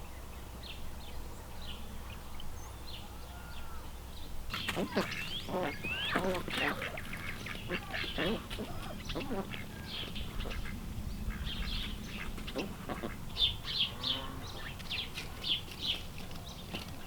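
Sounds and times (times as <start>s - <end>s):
ducks peeping: 4.5s - 17.0s.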